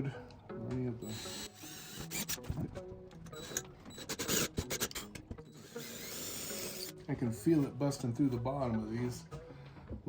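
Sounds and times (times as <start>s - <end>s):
drill boring into wood: 1.0s - 2.5s, 3.4s - 5.0s, 5.6s - 6.9s.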